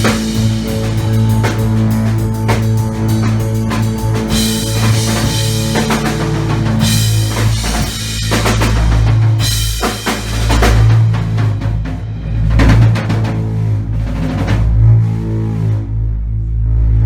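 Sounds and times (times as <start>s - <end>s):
rock band playing: 0.0s - 12.0s
loud cymbal crashes: 0.0s - 13.5s
heavy drums: 0.0s - 15.2s
sustained low drone: 0.0s - 17.0s.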